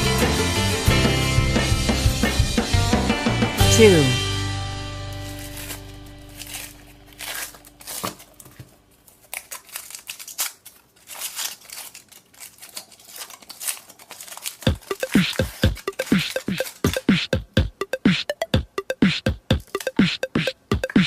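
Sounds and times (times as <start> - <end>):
plastic clicks and crinkles: 5.4 - 17.0
held musical tone: 14.7 - 21.0.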